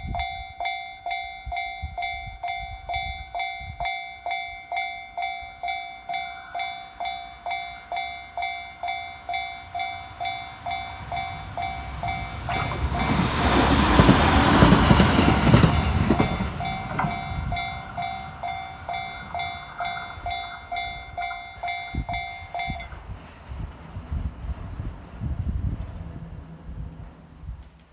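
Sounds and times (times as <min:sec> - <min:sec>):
level-crossing warning bell ringing: 0:00.0 - 0:23.0
train wheels and running gear: 0:05.7 - 0:26.2.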